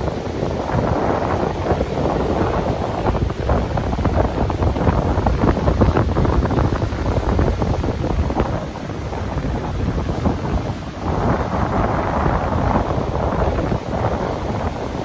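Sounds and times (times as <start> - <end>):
high surf rushing: 0.0 - 15.0
wind buffeting microphone: 0.0 - 15.0.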